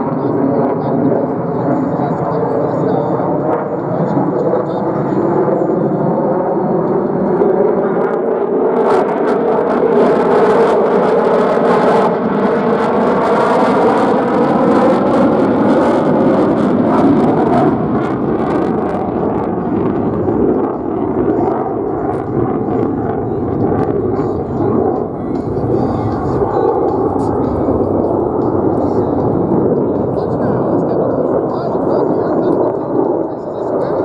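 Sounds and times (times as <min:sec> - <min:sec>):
fighter jet engine roaring: 0:00.0 - 0:34.0.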